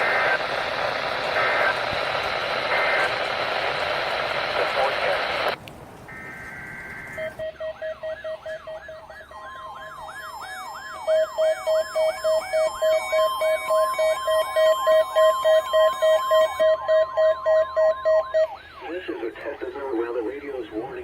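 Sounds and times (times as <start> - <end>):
warbling siren sweep: 6.1 - 19.3
steady warning alarm tone: 6.1 - 21.0
data tones: 10.2 - 18.6
pulsed beep: 10.5 - 18.6.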